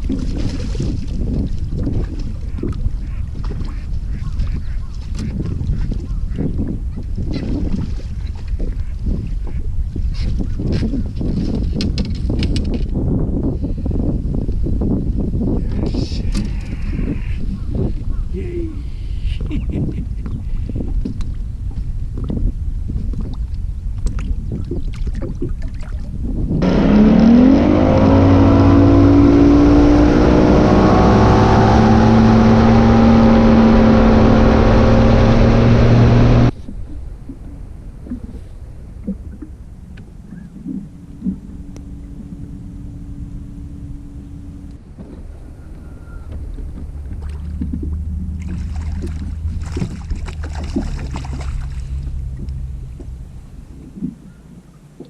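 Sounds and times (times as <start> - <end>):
water splashing against hull: 0.0 - 12.8, 19.5 - 26.6, 28.0 - 55.0
outboard motor running: 26.6 - 36.5, 38.9 - 54.4.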